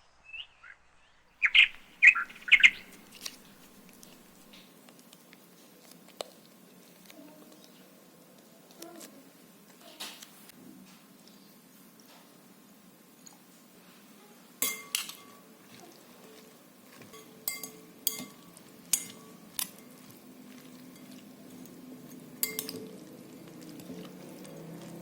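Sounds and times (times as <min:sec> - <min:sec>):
utensils and dishes clinking: 0:14.6 - 0:25.0.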